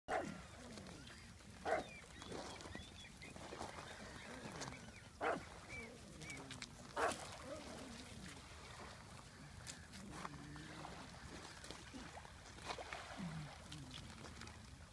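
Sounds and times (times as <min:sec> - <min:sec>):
dog barking: 0:00.1 - 0:00.4, 0:01.6 - 0:01.9, 0:05.2 - 0:05.4, 0:07.0 - 0:07.2.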